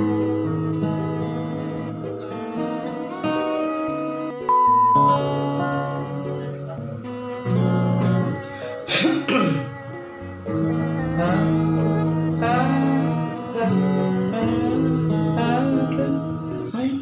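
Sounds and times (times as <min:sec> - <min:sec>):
acoustic guitar playing: 0:00.0 - 0:17.0
person singing: 0:10.9 - 0:17.0.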